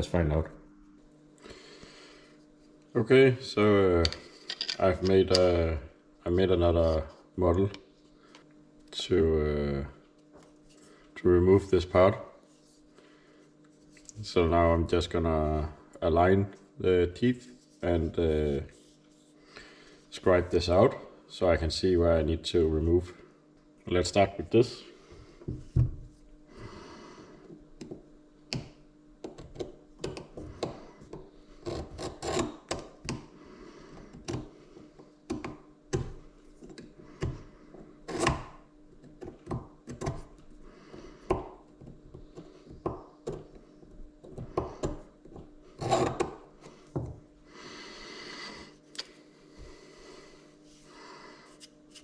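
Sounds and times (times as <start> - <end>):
parts handled and set down: 4.0 - 5.5.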